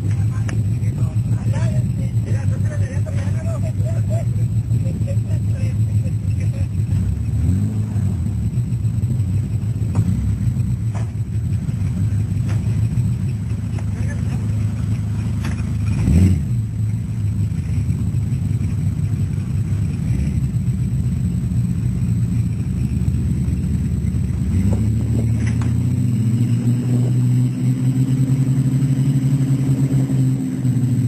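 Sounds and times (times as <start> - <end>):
truck engine running: 0.0 - 31.0
thump: 9.9 - 10.2, 10.9 - 11.2.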